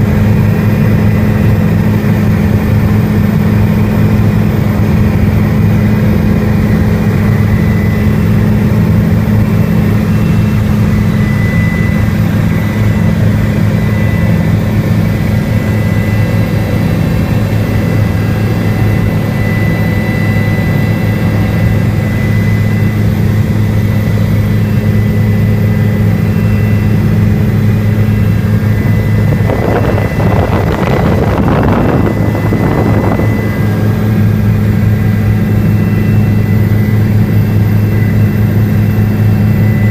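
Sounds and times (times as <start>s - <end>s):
helicopter drone: 0.0s - 39.9s
thin steady whine: 0.0s - 39.9s.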